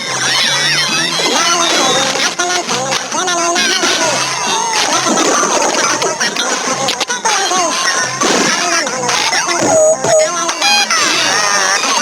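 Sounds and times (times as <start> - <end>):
music: 0.0 - 12.0
short held pitched notes: 9.5 - 10.5.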